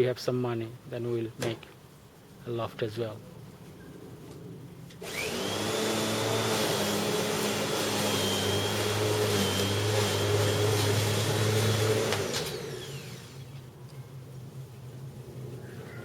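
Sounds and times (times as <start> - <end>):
motor winding down: 5.0 - 13.6
electric lawnmower whining: 5.0 - 13.7.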